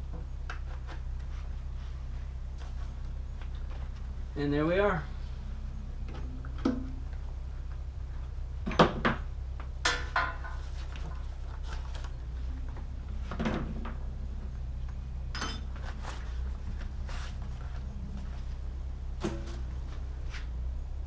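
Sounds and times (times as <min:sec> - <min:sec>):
steady low hum: 0:00.0 - 0:21.0
tools knocking and clattering: 0:09.8 - 0:11.2, 0:15.3 - 0:15.9
bright clink: 0:15.3 - 0:15.7
short metallic ring: 0:15.3 - 0:15.7.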